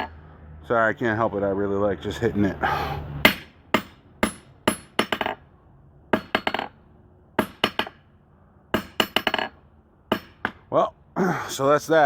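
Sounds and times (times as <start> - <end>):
hammer hitting anvil: 3.3 - 5.4, 8.8 - 9.5, 10.1 - 10.6.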